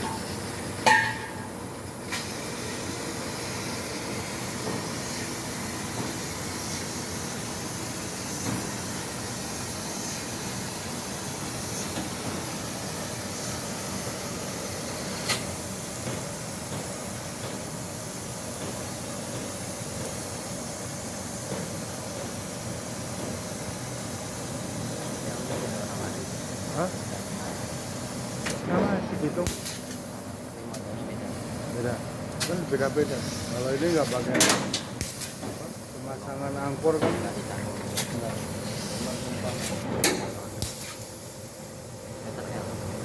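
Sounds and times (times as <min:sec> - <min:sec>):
laser cutting machine hissing: 0:00.0 - 0:43.0
sharp click: 0:34.3 - 0:35.6, 0:38.9 - 0:41.1.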